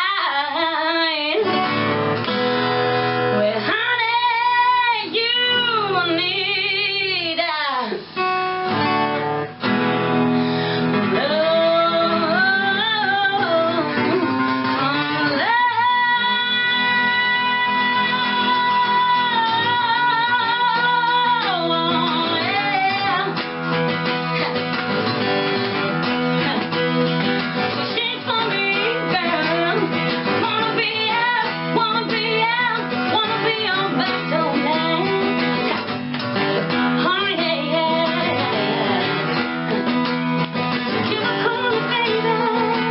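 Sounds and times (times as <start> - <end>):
guitar accompaniment: 0.0 - 42.9
person singing: 10.8 - 23.5, 25.8 - 35.9, 36.6 - 39.9, 40.9 - 42.9.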